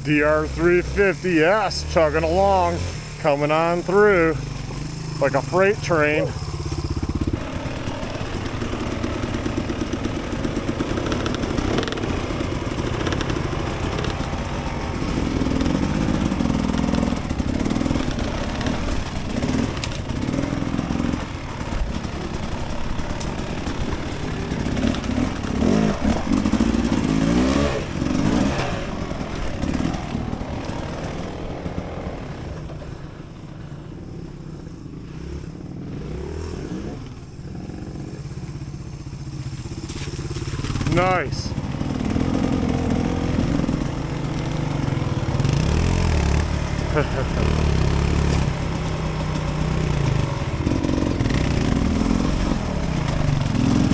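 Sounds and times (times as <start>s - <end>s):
dirt bike engine revving: 0.0s - 53.9s.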